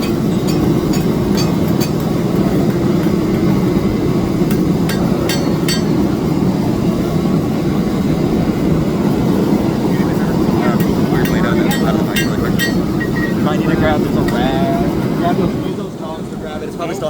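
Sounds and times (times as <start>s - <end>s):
hammer blows on steel: 0.0s - 6.5s, 10.7s - 13.5s.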